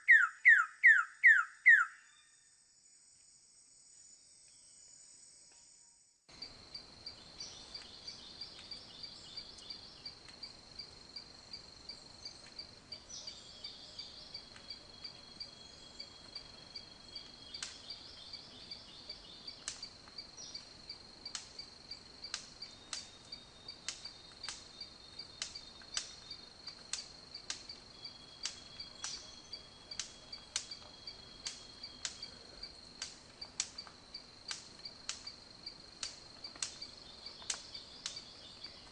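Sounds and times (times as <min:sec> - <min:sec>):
insects trilling: 0:00.0 - 0:38.9
sharp ticks: 0:23.8 - 0:24.7, 0:29.9 - 0:32.3, 0:33.0 - 0:35.4, 0:36.0 - 0:38.2.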